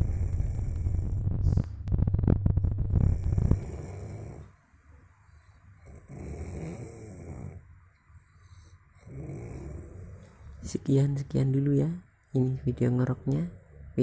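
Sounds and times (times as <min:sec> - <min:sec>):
person snoring: 0:00.0 - 0:01.7, 0:02.6 - 0:04.5, 0:05.8 - 0:07.6, 0:08.4 - 0:10.4.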